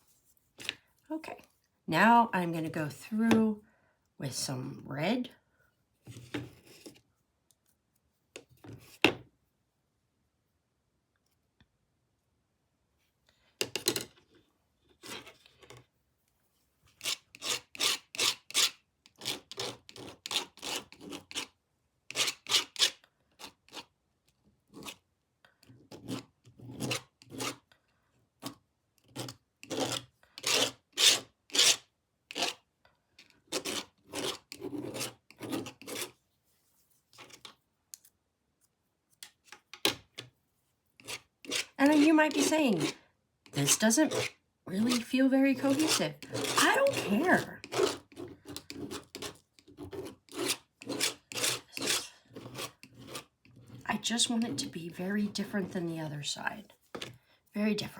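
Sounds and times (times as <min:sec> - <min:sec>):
scraper scraping paint off board: 0:33.5 - 0:36.2, 0:41.0 - 0:55.9.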